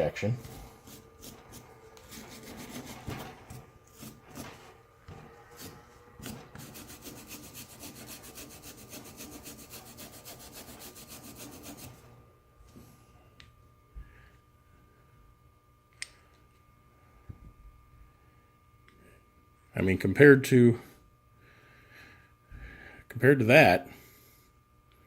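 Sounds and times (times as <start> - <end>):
brush scrubbing steel: 0.0 - 12.1.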